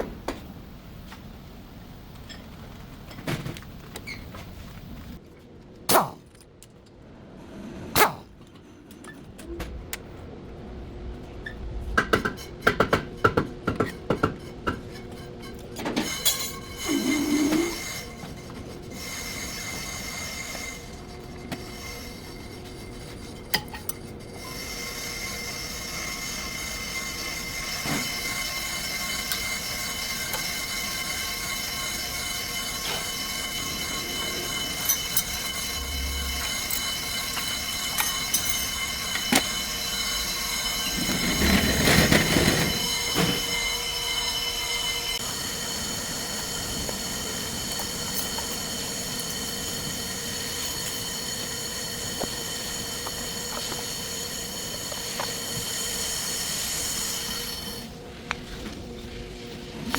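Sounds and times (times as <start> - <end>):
brake pads squealing: 2.2 - 5.2, 13.8 - 45.2.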